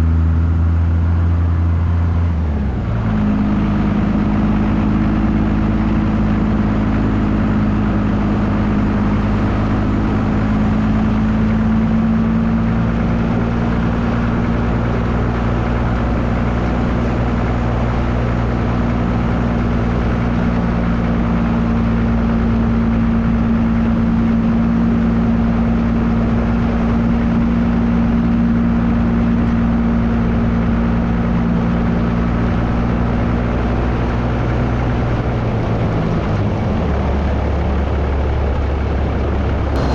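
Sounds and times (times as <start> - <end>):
diesel pickup engine driving: 0.0 - 39.9
road and wind noise: 0.0 - 39.9.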